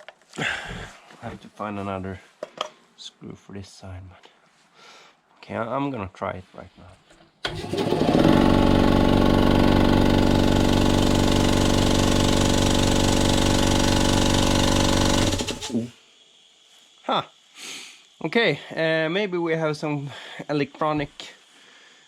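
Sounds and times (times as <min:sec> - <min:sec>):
electric air compressor running: 0:07.5 - 0:16.0.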